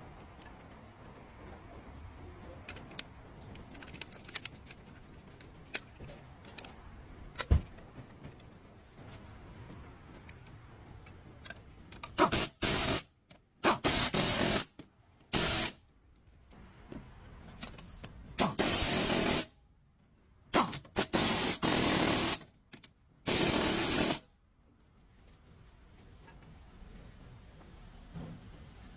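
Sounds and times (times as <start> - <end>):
compressed air hissing bursts: 12.2 - 14.7, 15.3 - 15.8, 18.4 - 19.5, 20.5 - 22.4, 23.3 - 24.2.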